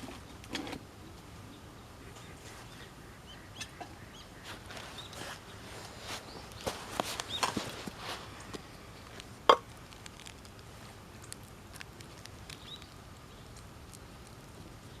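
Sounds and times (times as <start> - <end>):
campfire crackling: 4.0 - 15.0
fire popping: 5.0 - 15.0.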